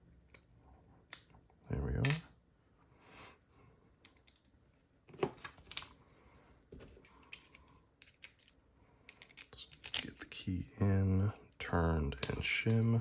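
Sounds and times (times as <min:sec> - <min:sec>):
padlock parts clicking and tapping: 0:06.8 - 0:10.4.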